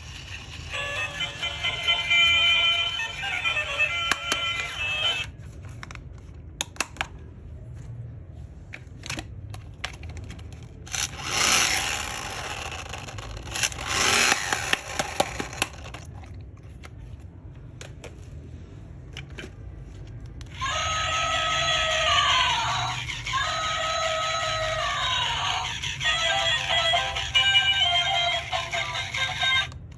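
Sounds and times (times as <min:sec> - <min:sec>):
toy electronic tune: 0:00.0 - 0:05.3, 0:20.6 - 0:29.7.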